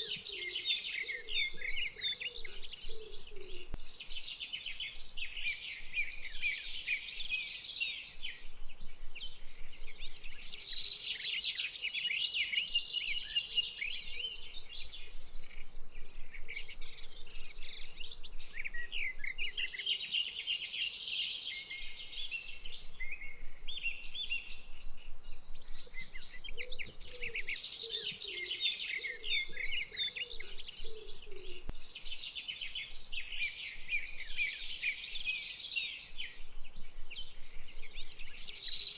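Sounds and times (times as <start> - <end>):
lower-pitched bird calls: 0.0 - 8.4, 25.6 - 36.4
small birds chirping: 0.0 - 38.9.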